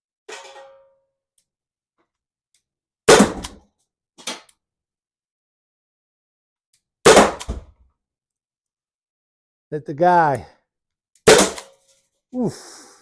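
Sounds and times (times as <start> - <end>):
air pistol shots: 7.0 - 7.6, 11.3 - 11.7.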